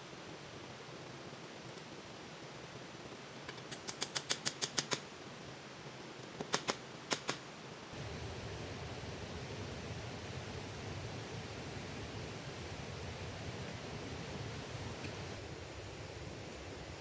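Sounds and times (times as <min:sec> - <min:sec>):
rain hiss: 0:00.0 - 0:17.0
sharp clicks: 0:03.5 - 0:05.1, 0:06.4 - 0:07.4.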